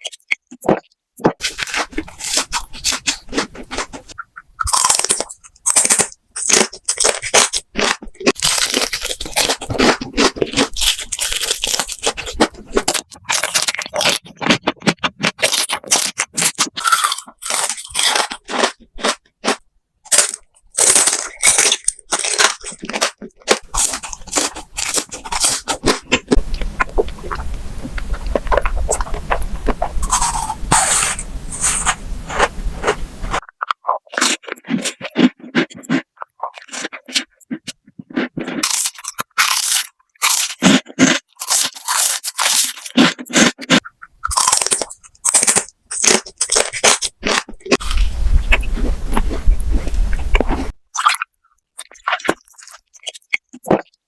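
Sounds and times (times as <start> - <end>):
crunchy food chewing: 0.0 - 54.0
low hum: 26.3 - 33.4.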